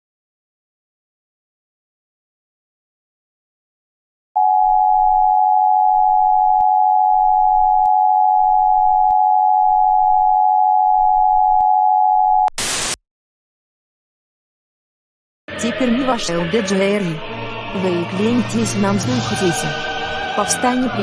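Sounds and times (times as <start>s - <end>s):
harsh static burst: 12.6s - 13.0s.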